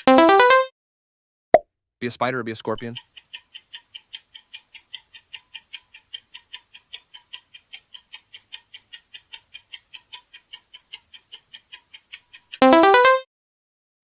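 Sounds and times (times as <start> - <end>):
fast clock-like ticking: 2.8 - 13.0.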